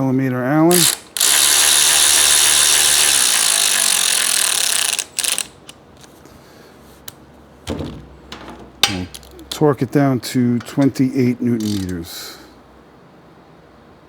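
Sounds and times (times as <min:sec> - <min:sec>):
faint knocks: 0:07.6 - 0:09.6.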